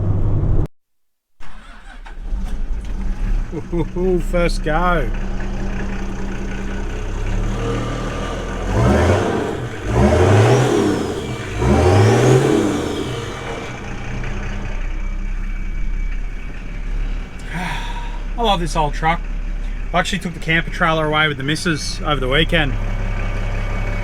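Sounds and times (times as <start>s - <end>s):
diesel truck engine revving: 1.4s - 24.0s.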